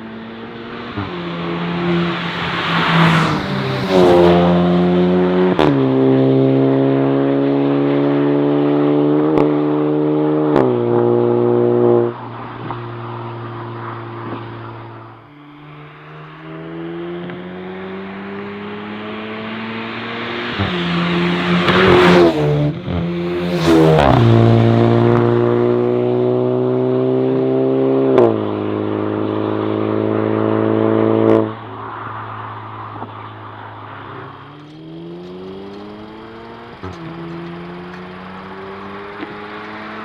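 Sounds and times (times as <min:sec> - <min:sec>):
car engine accelerating: 0:00.0 - 0:40.0
exhaust cracks: 0:31.6 - 0:40.0.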